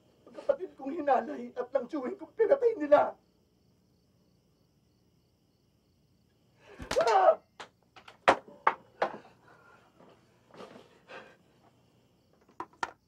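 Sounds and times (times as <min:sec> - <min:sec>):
person crying out sharply: 0:06.8 - 0:07.5.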